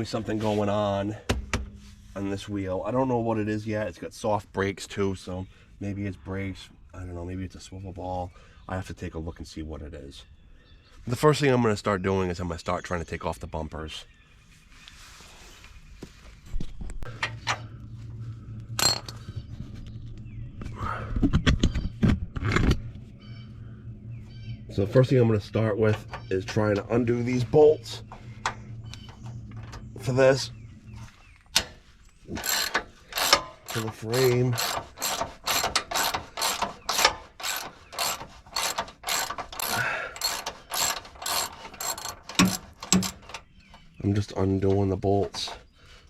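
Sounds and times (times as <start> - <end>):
steady low hum: 16.7 - 46.0
ratchet wrench clicking: 32.3 - 43.4
metal hand tools clinking: 32.4 - 43.4.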